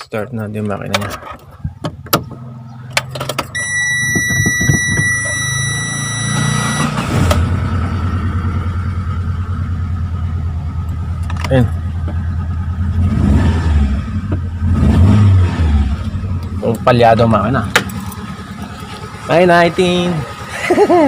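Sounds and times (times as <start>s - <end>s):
engine starting and idling unevenly: 0.7s - 21.0s
high electronic tone: 3.6s - 7.0s.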